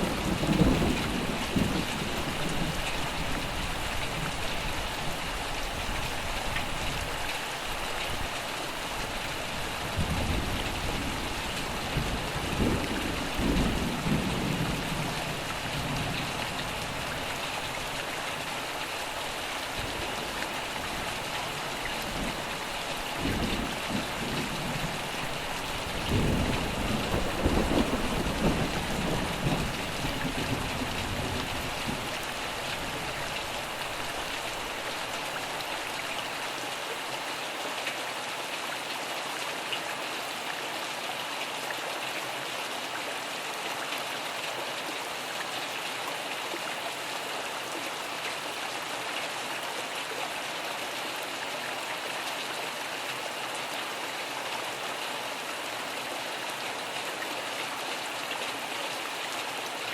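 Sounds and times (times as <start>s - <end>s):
low rumbles of thunder: 0.0s - 4.4s, 9.9s - 17.1s, 22.1s - 32.2s
steady rain falling: 0.0s - 59.9s.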